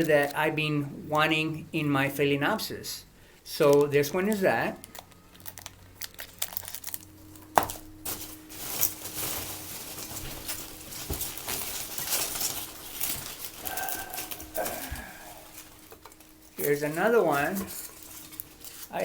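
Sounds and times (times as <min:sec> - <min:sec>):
paper and plastic wrapping rustling: 0:03.5 - 0:19.0.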